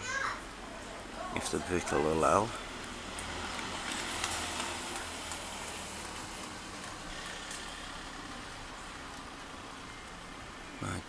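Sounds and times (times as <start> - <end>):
distant road traffic hiss: 0.1 - 11.0.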